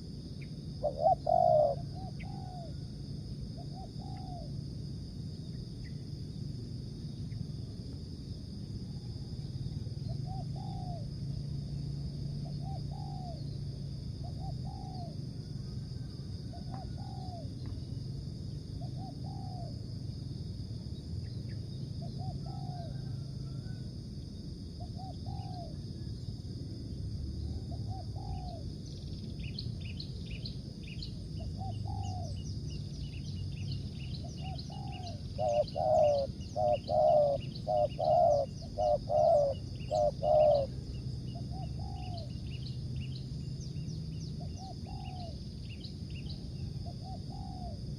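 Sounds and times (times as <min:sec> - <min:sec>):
dove cooing: 0:00.8 - 0:02.8, 0:14.2 - 0:15.2, 0:16.5 - 0:17.5, 0:18.9 - 0:19.7, 0:24.9 - 0:25.8, 0:27.6 - 0:28.6, 0:31.5 - 0:32.4, 0:34.2 - 0:42.3, 0:44.4 - 0:45.4, 0:46.8 - 0:47.8
small bird chirping: 0:27.9 - 0:47.8.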